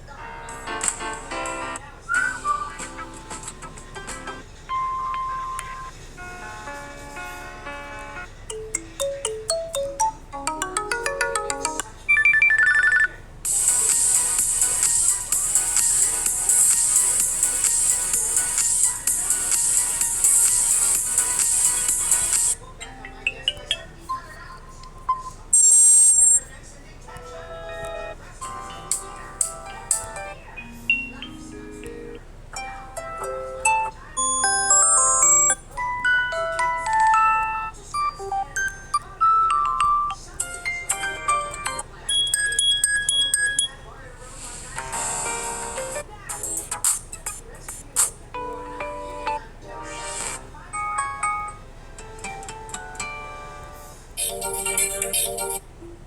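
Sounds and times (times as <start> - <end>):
electronic ringtone: 4.7 - 13.7, 25.2 - 26.4, 33.6 - 40.2, 40.8 - 43.8, 54.2 - 55.6
chiming ringtone melody: 8.1 - 13.2, 32.9 - 43.8, 54.2 - 55.6
high beeps: 25.2 - 26.4, 34.2 - 35.6, 42.1 - 43.8.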